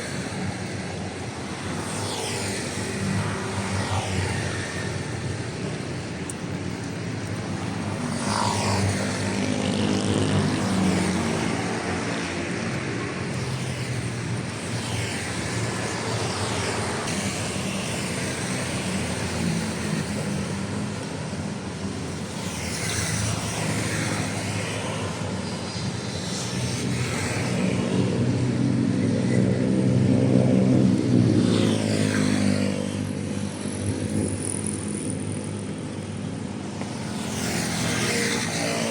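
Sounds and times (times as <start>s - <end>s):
vehicles passing on road: 0.0s - 38.9s.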